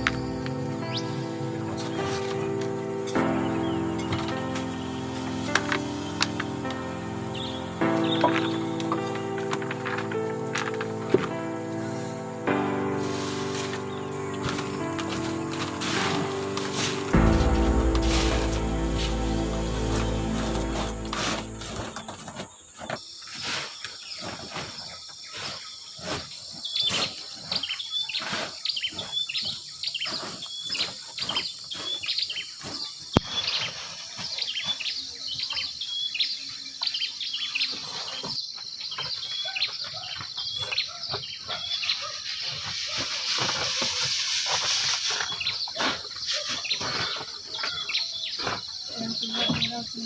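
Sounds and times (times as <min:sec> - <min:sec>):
high insect hiss: 0:42.2 - 0:45.6.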